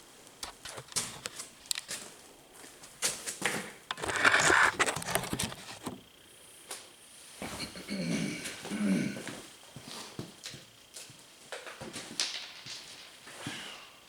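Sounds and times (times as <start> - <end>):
clicks and handling noises: 0.4 - 2.0, 3.9 - 6.1
rustling scrape: 3.9 - 6.0.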